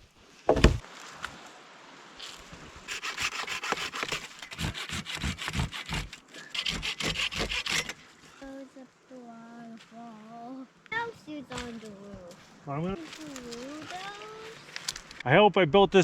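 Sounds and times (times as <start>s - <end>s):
loud thump: 0.5s - 0.8s
hand saw cutting wood: 2.9s - 8.0s.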